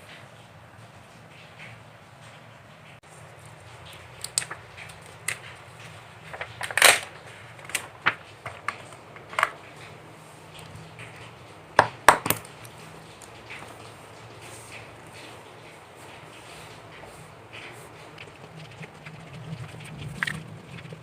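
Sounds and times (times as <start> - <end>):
faint steady hum: 0.0 - 21.0
knocks and clicks of objects handled: 3.8 - 9.7, 10.6 - 15.4.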